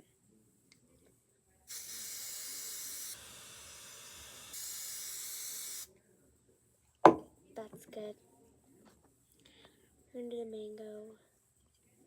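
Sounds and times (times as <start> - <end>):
aerosol hairspray spraying: 1.7 - 5.9.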